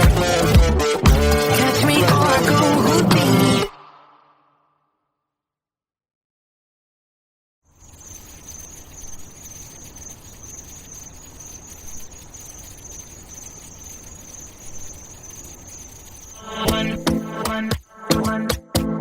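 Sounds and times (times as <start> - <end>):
high-pitched insect-like trill: 7.7 - 18.1.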